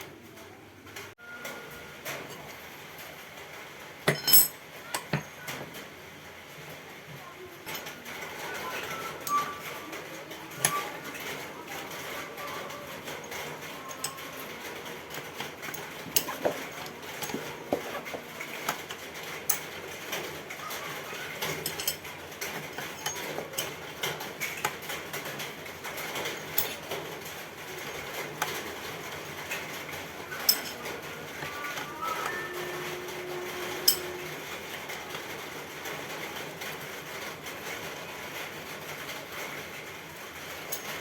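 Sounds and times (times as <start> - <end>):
tools and metal parts clinking: 4.0 - 5.8, 7.6 - 35.4, 40.6 - 41.0.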